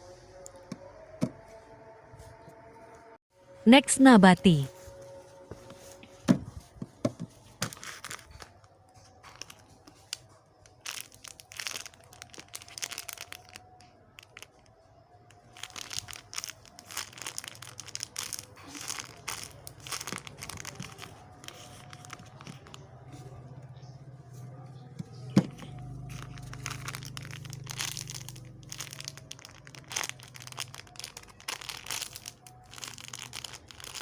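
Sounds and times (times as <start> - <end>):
plastic packaging crinkling: 9.2 - 14.6, 15.3 - 22.8, 25.4 - 34.0.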